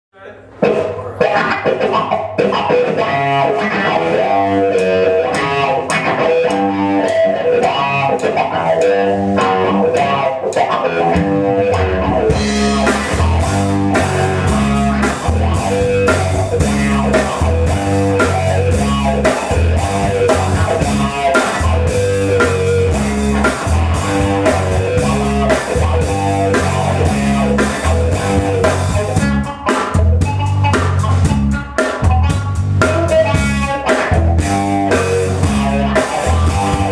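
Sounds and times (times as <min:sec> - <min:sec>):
drum kit: 0:00.5 - 0:36.9
electric guitar: 0:00.5 - 0:36.9
deep bass: 0:11.2 - 0:36.9.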